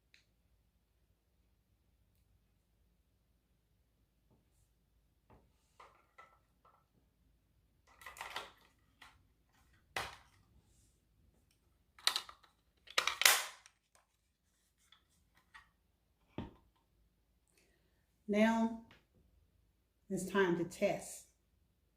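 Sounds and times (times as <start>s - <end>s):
small plastic clicks: 12.0s - 14.0s.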